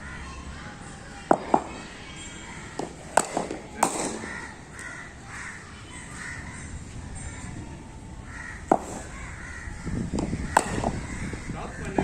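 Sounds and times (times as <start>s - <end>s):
crows cawing: 4.0s - 7.4s, 8.2s - 12.0s.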